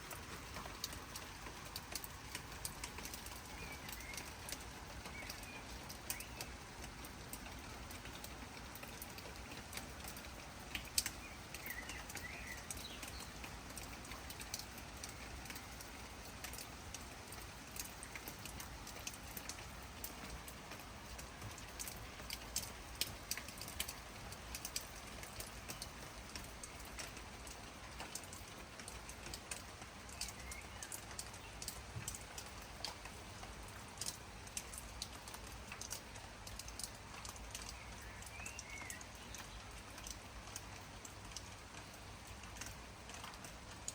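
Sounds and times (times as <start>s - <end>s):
rain dripping on leaves: 0.0s - 43.9s
bird chirping: 3.0s - 6.6s, 11.0s - 13.4s, 30.1s - 31.7s, 37.6s - 40.1s.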